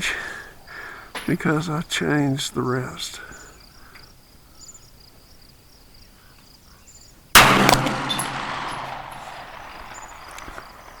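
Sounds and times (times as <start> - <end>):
faint crickets chirping: 0.0 - 7.3, 9.0 - 11.0
pistol shot with echo: 7.4 - 11.0.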